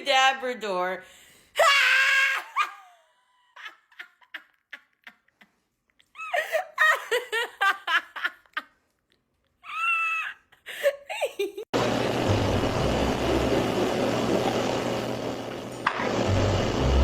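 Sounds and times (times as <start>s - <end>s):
loud cry: 1.6s - 2.8s.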